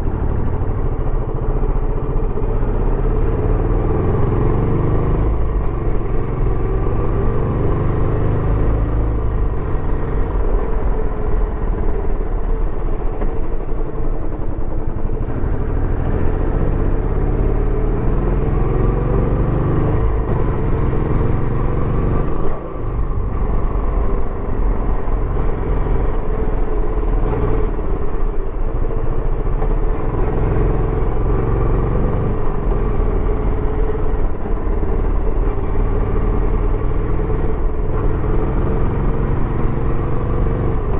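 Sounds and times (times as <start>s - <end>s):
motorcycle engine running: 0.0s - 40.9s.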